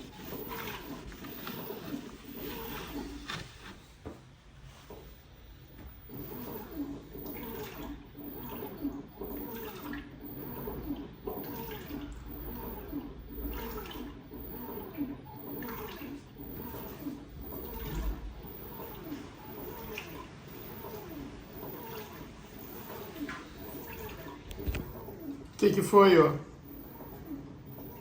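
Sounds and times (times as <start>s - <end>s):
water gurgling: 0.0s - 3.2s
washing machine drain pump: 0.0s - 28.0s.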